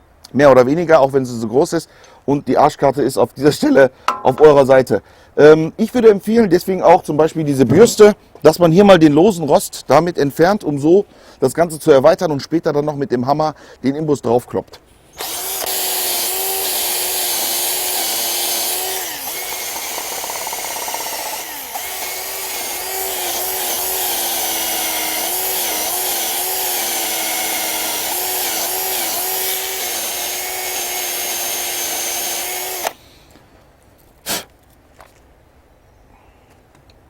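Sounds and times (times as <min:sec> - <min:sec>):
drill with wire brush scrubbing: 0:14.9 - 0:33.3, 0:34.3 - 0:34.5.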